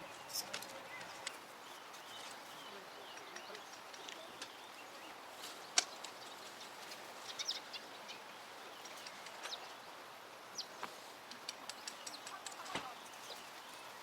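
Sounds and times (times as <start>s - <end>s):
faint bird chirps: 0.0s - 10.0s.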